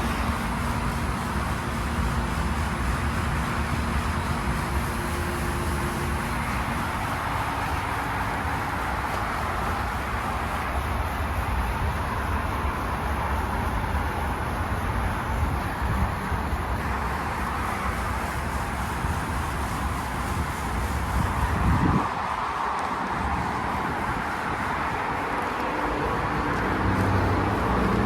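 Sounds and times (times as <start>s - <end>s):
air conditioner running: 0.0s - 22.0s.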